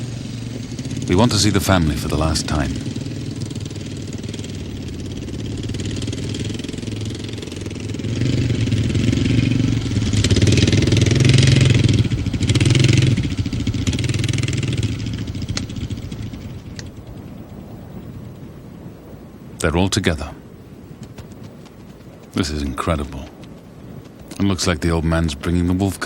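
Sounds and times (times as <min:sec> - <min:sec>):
small vehicle engine running: 0:00.0 - 0:17.7.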